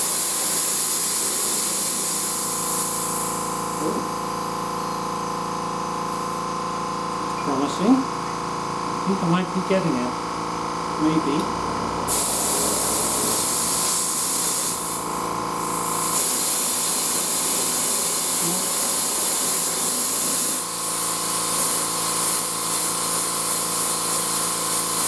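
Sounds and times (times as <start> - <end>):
compressed air hissing into tire: 0.0 - 4.7, 11.8 - 25.0.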